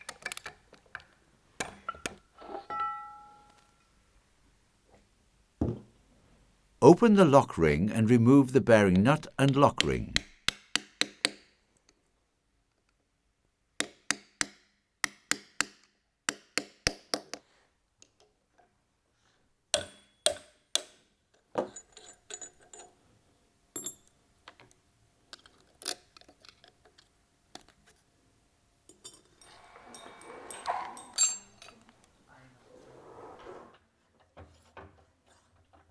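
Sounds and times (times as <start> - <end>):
hammer tapping on metal: 10.1 - 11.4
metal parts clinking: 21.7 - 23.0, 28.9 - 31.9.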